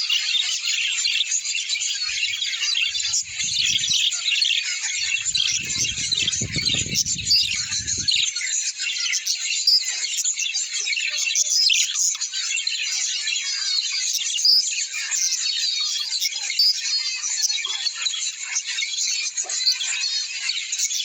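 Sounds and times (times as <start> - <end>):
small birds chirping and twittering: 0.0 - 21.0
low rumble: 5.0 - 8.2.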